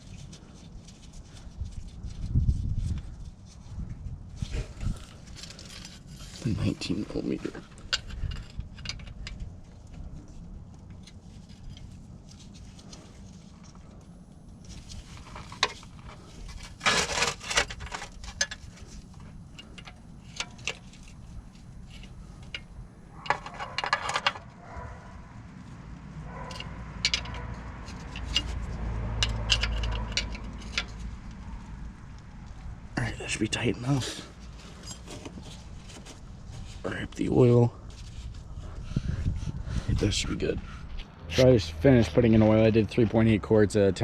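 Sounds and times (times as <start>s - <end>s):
metal clicks and clinks: 26.3s - 31.0s.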